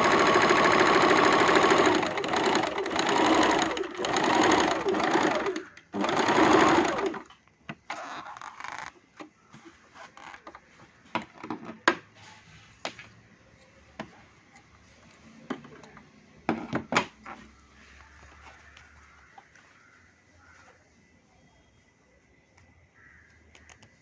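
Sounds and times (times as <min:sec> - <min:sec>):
sewing machine stitching: 0:00.0 - 0:07.3.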